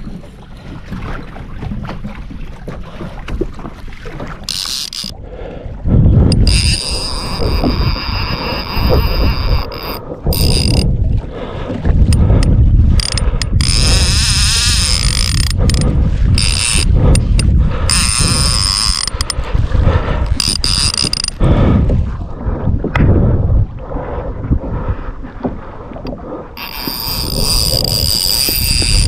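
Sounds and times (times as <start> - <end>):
wind rumble on microphone: 0.0 - 29.0
fishing reel ratcheting: 4.5 - 5.2, 6.3 - 10.9, 12.1 - 19.5, 20.3 - 21.4, 26.6 - 29.0.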